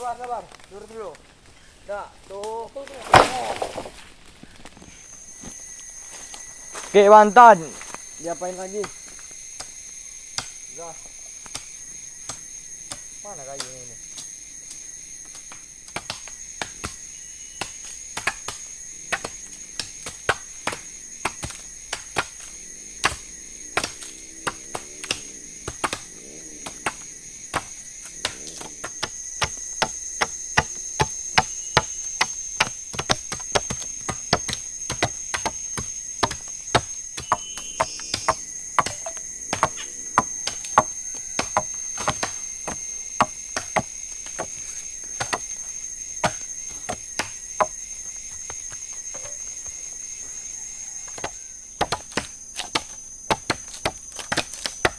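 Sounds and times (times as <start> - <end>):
high whine of forest insects: 0.0 - 54.9
blade chopping into wood: 2.9 - 4.0, 15.4 - 49.4, 51.1 - 54.9.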